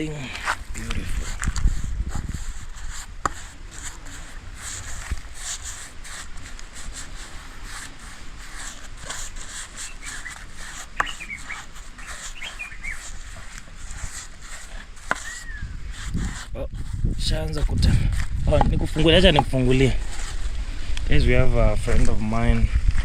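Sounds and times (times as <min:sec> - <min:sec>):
steady outdoor hiss: 0:00.0 - 0:23.0
bird chirps: 0:09.8 - 0:13.1, 0:15.2 - 0:15.8.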